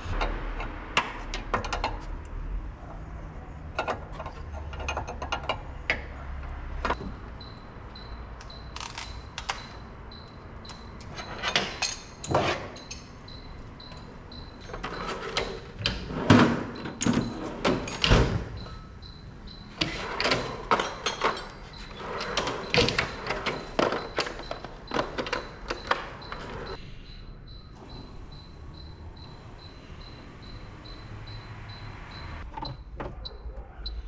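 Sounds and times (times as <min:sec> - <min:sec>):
hard parts knocking and clunking: 0:00.1 - 0:02.3, 0:02.9 - 0:26.8.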